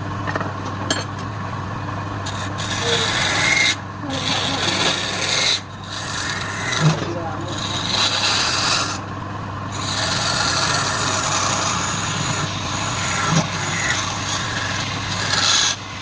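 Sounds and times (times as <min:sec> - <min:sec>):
lathe motor hum: 0:01.4 - 0:16.0
tool hissing on spinning wood: 0:02.2 - 0:09.1, 0:09.7 - 0:16.0.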